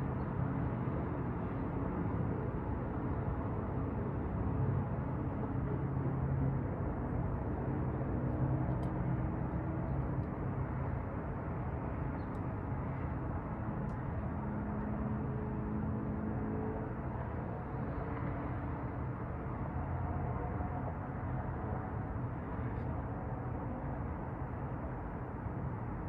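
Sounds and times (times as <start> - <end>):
city street traffic: 7.4 - 26.0.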